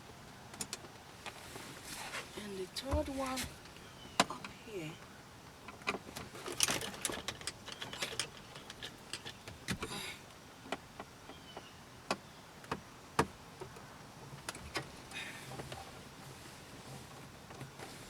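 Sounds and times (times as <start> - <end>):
handling rustles: 1.2 - 3.8.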